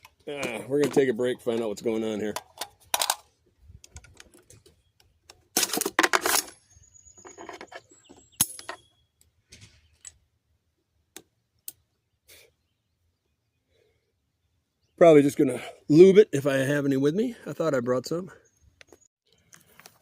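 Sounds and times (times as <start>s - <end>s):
metallic clicks and rattles: 0.0s - 6.6s.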